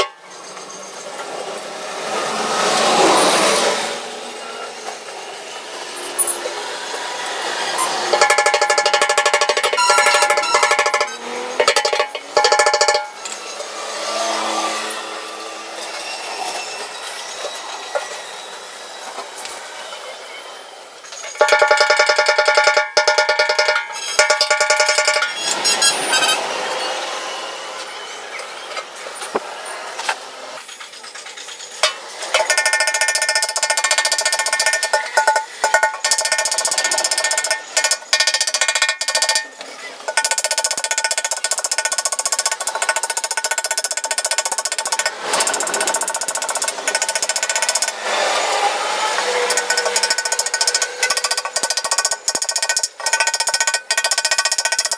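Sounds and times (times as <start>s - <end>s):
hammer striking sheet metal: 8.0s - 13.3s, 21.2s - 25.5s, 31.8s - 48.0s.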